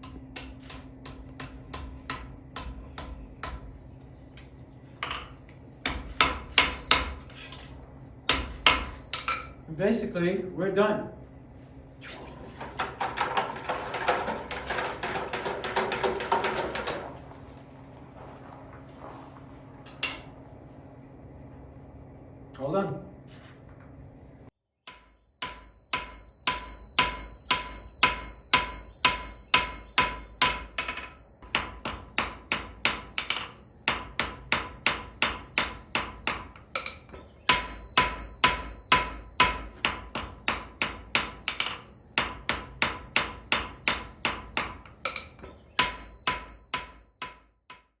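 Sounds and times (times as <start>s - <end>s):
hammer striking anvil: 0.0s - 3.7s, 5.0s - 9.8s, 24.9s - 48.0s
anvil ringing: 5.0s - 10.1s, 24.9s - 48.0s.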